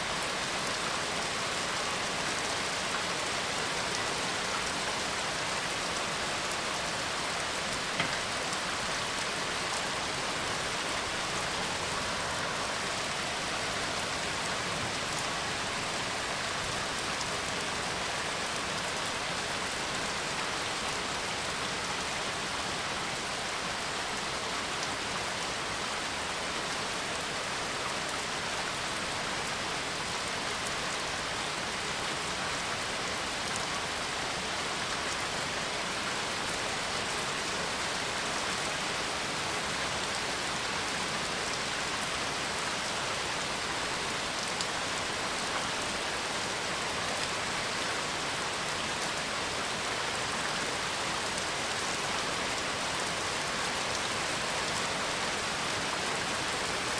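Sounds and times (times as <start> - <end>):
steady rain: 0.0 - 56.9.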